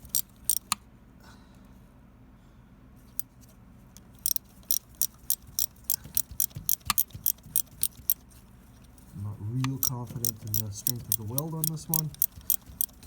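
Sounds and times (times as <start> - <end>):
ratchet wrench clicking: 0.0 - 0.8, 4.1 - 8.2, 9.6 - 13.0.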